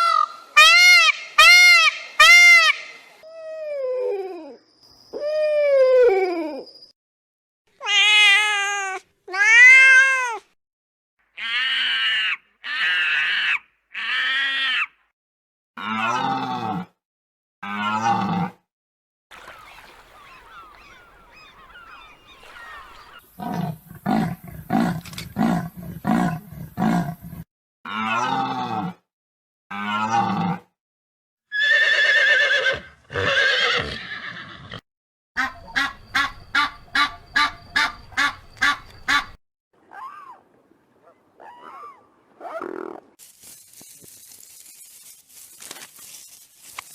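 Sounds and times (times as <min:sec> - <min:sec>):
horse whinnying: 0:31.5 - 0:34.8
farm animal calls: 0:35.4 - 0:40.4.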